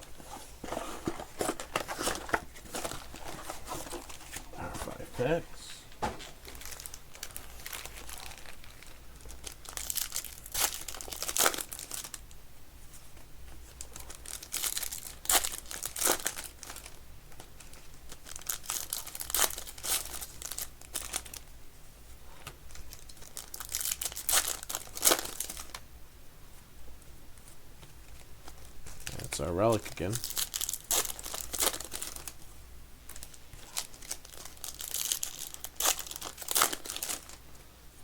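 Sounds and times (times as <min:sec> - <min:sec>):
wrappers tearing and crinkling: 0:00.6 - 0:04.5, 0:06.2 - 0:12.3, 0:13.7 - 0:21.4, 0:22.7 - 0:25.8, 0:28.1 - 0:32.4, 0:33.1 - 0:37.4.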